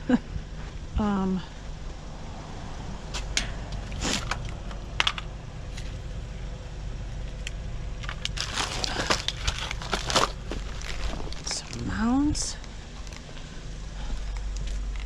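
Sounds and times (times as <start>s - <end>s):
steady low rumble: 0.0s - 15.0s
plastic bags rustling and crinkling: 8.0s - 13.4s.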